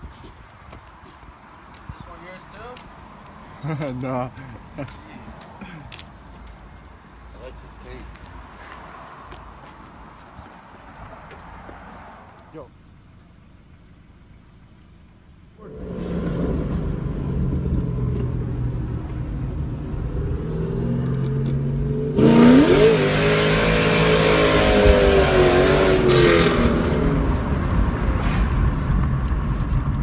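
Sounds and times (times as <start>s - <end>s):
car engine revving: 15.6s - 29.6s.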